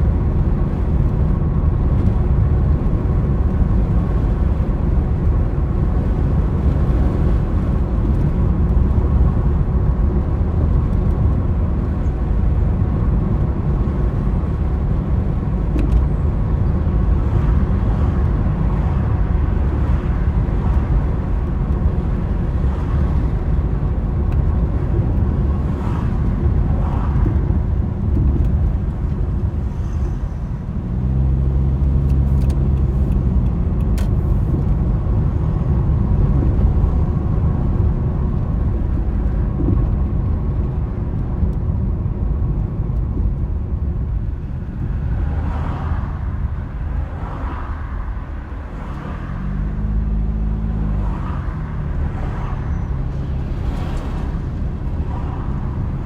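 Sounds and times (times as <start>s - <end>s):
car engine hum: 0.0s - 56.0s
road and wind noise: 0.0s - 56.0s.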